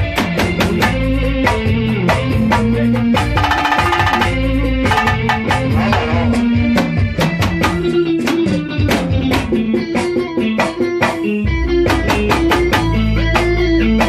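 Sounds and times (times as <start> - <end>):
bass: 0.0 - 14.0
drum kit steady beat: 0.0 - 14.0
electric guitar picking melody: 0.0 - 14.0.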